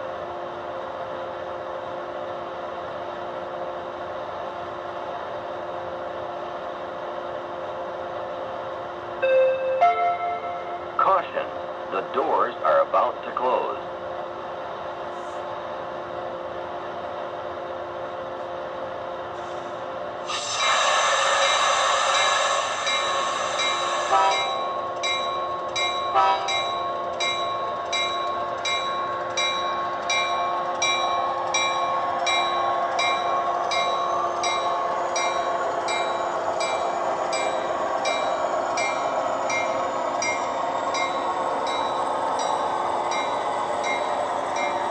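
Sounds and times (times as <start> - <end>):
model train bell ringing: 22.2 - 44.9
model train horn blast: 24.1 - 24.5, 26.2 - 26.5.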